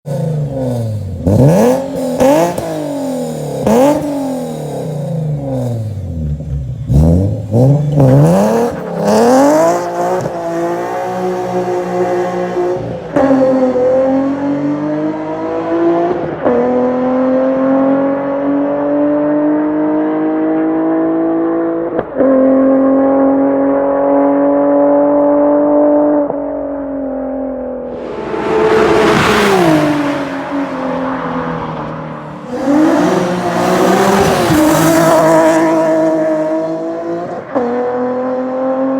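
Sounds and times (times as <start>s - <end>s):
car engine revving: 0.1s - 26.4s, 27.2s - 38.9s
loud rushing noise: 27.8s - 35.1s.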